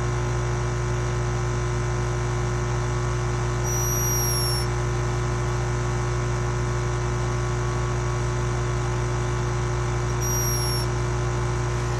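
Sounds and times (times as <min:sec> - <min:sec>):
low electrical hum: 0:03.3 - 0:05.2, 0:09.0 - 0:11.9
hummingbird high-pitched squeak: 0:03.7 - 0:04.7, 0:10.2 - 0:10.9.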